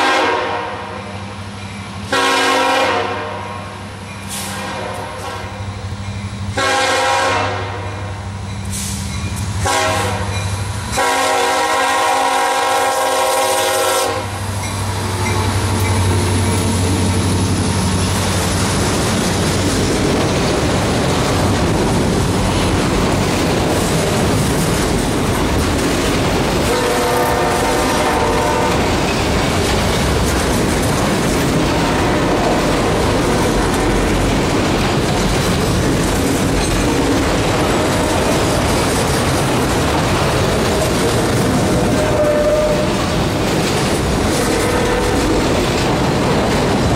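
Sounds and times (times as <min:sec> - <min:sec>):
locomotive horn blasts: 0:00.0 - 0:01.1, 0:02.1 - 0:03.8, 0:04.5 - 0:05.6, 0:06.6 - 0:08.0, 0:09.6 - 0:10.3, 0:10.9 - 0:14.4, 0:26.7 - 0:28.9, 0:41.9 - 0:42.9, 0:44.4 - 0:45.2
locomotive engine hum: 0:03.5 - 0:46.9
train wheels clattering on rails: 0:08.4 - 0:46.9.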